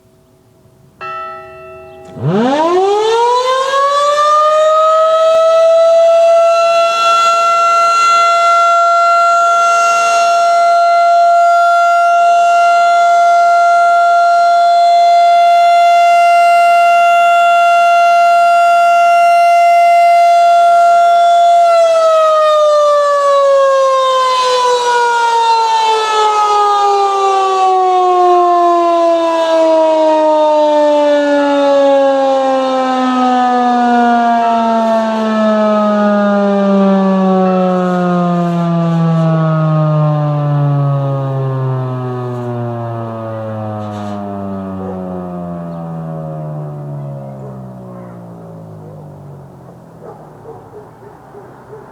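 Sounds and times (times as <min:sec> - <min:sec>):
warning siren winding down: 0:01.0 - 0:50.6.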